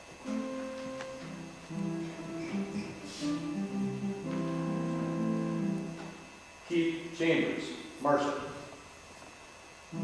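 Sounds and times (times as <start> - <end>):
slow instrumental music: 0.0 - 6.4.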